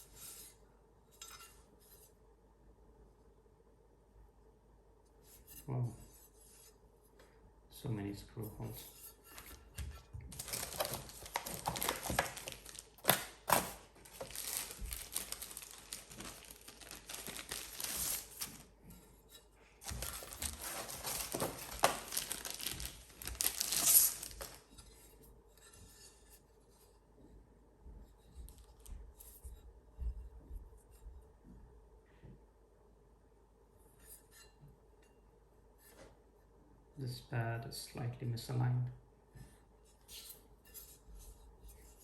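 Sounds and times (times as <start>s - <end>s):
packaging rustling and crinkling: 10.3s - 18.8s, 19.8s - 24.7s.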